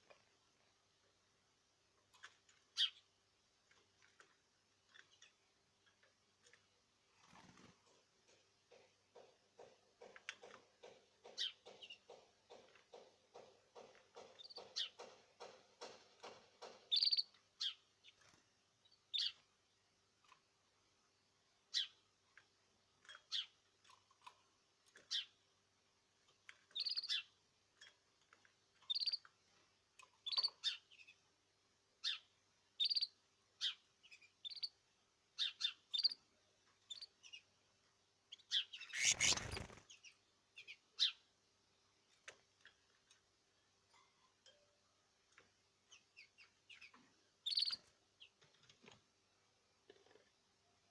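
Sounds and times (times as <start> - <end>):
bird chirping: 16.9 - 17.8, 28.9 - 29.3, 32.8 - 34.8, 35.4 - 36.2, 36.9 - 37.4, 38.3 - 39.9, 46.7 - 47.8.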